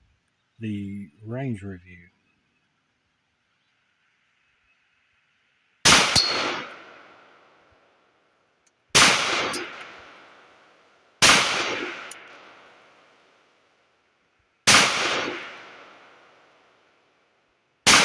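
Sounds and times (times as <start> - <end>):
pistol shots echoing: 5.9 - 7.2, 9.0 - 10.3, 11.2 - 12.6, 14.7 - 16.2.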